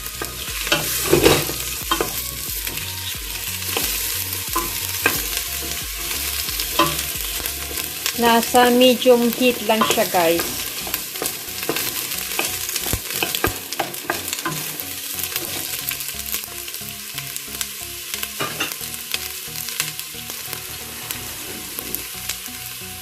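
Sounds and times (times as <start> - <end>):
utensil stirring against pan: 0.0 - 16.4
garlic and onion sizzling in oil: 0.0 - 23.0.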